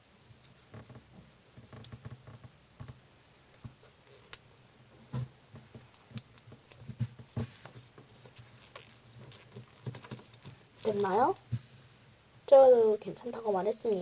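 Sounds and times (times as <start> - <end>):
paper crinkling: 5.8 - 11.4.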